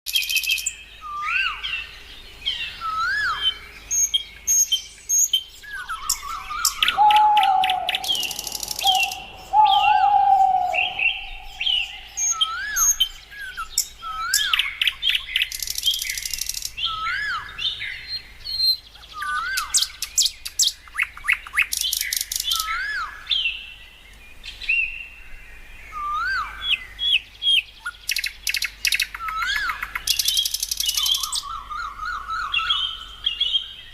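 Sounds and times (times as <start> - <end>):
steady low hissing tone: 0.1 - 20.9
small birds chirping: 0.1 - 33.9.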